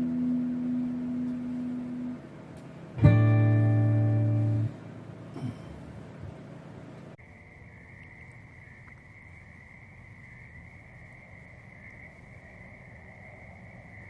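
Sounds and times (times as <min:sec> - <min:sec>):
acoustic guitar chord strummed: 0:00.0 - 0:05.8.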